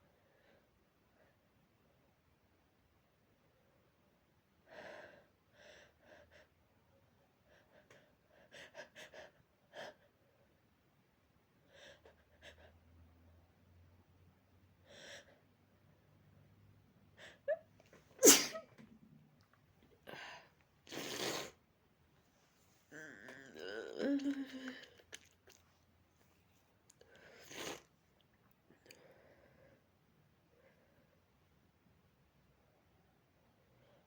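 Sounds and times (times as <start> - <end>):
loud sneeze: 18.2 - 18.7.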